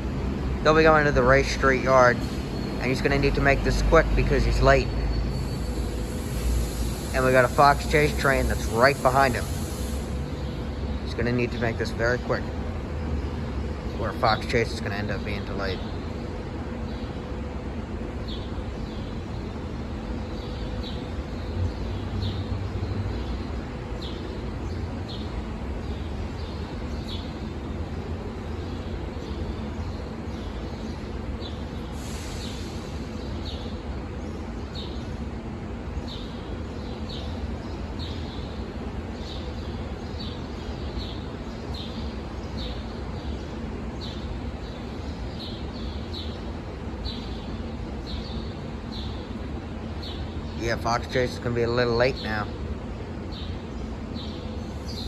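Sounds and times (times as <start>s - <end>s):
electric train rumbling and humming: 0.0s - 50.6s
small birds chirping: 0.0s - 55.0s
short burst of hiss: 5.4s - 10.2s, 32.0s - 33.1s.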